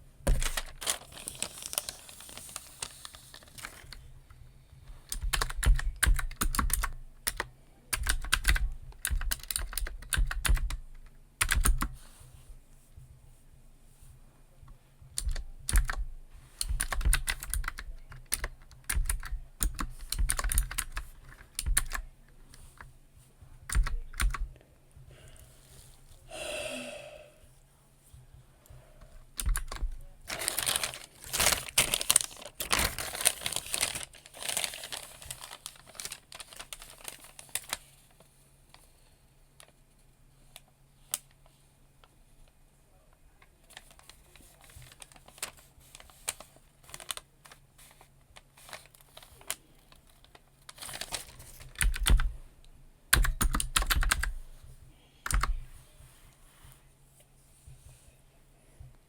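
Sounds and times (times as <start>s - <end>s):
typing on computer keyboard: 5.1s - 12.0s, 15.2s - 22.1s, 23.7s - 24.5s, 29.3s - 30.0s, 51.7s - 52.3s, 53.1s - 54.4s, 55.2s - 55.6s.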